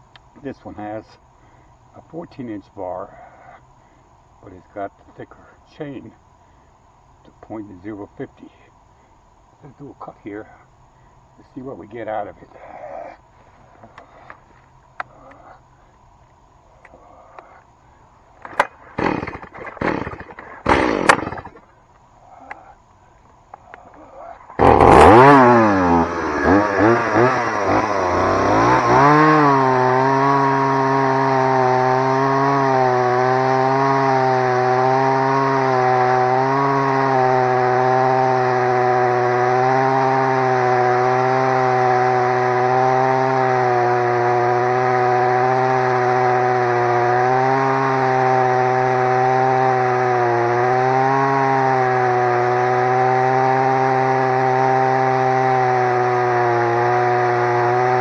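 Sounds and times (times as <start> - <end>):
chainsaw cutting through tree trunk: 18.3 - 21.8, 23.5 - 58.0.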